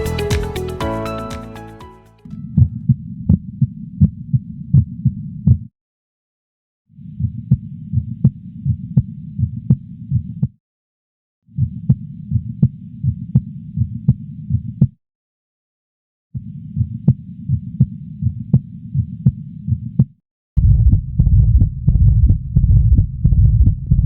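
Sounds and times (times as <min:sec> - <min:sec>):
sharp heartbeats: 0:20.6 - 0:24.0
steady low rumble: 0:20.6 - 0:24.0.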